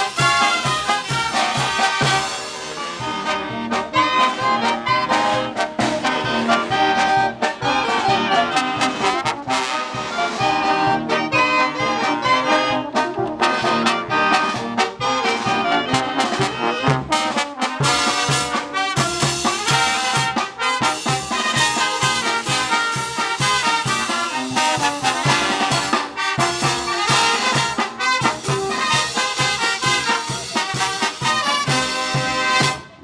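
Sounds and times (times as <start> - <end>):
brass band playing: 0.0 - 33.0
steady drum beat: 0.0 - 33.0.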